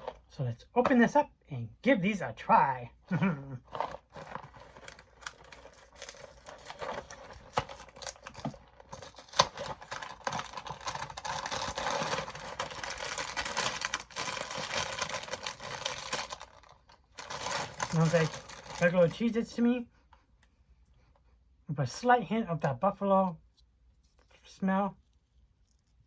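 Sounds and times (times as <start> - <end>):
cracker package opening: 3.7 - 19.1
plastic packaging crinkling: 3.7 - 19.4.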